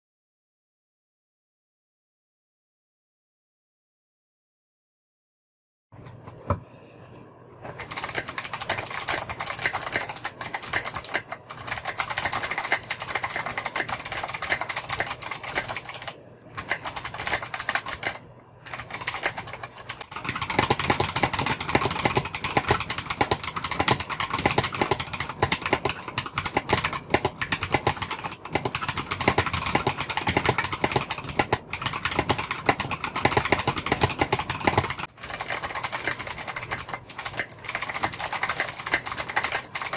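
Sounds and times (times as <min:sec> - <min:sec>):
typing on mechanical keyboard: 0:07.8 - 0:39.9.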